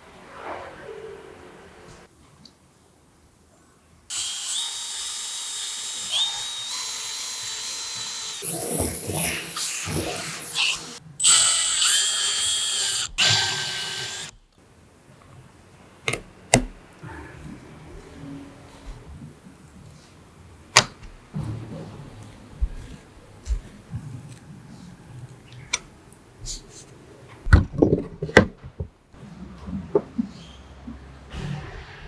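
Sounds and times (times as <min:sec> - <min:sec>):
electric drill whining: 0:04.1 - 0:14.3.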